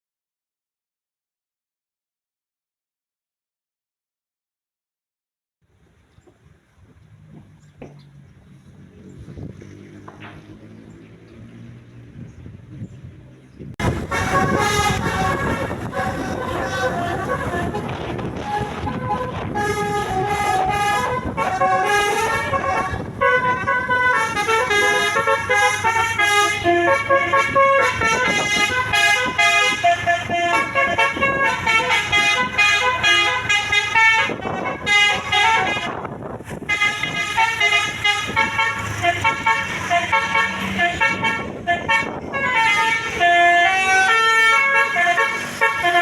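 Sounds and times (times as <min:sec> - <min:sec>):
multi-tone bus horn tune: 0:13.8 - 0:46.0.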